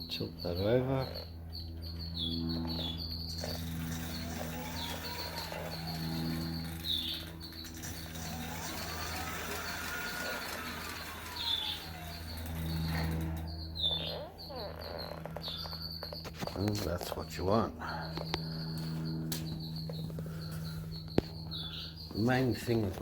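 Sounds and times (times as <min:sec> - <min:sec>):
birds chirping: 0:00.0 - 0:23.0
electric motor whine: 0:00.8 - 0:23.0.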